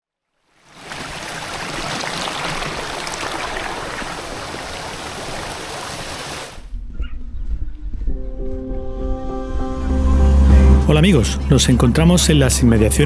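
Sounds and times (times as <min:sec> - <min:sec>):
mountain stream rushing: 0:00.6 - 0:06.6.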